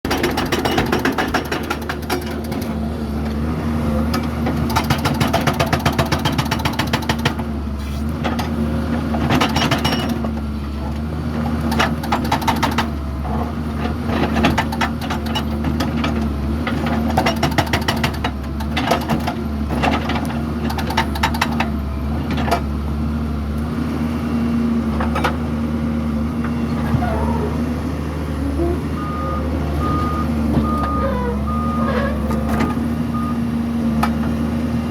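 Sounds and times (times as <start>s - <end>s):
diesel engine running: 10.1s - 34.9s
reversing alarm beeping: 28.5s - 33.5s.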